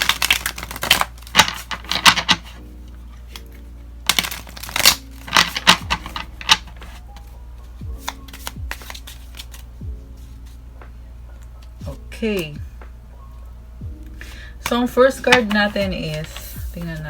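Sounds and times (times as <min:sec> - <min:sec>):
cards shuffling: 0:00.0 - 0:10.6, 0:14.1 - 0:17.0
soft background music: 0:00.0 - 0:17.0.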